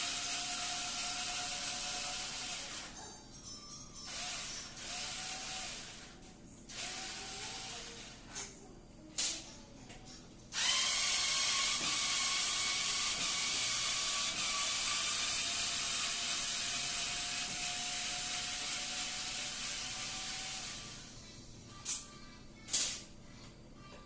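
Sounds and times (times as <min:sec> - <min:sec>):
power screwdriver running: 0:00.0 - 0:02.9, 0:04.1 - 0:06.1, 0:06.7 - 0:08.1, 0:10.6 - 0:21.1.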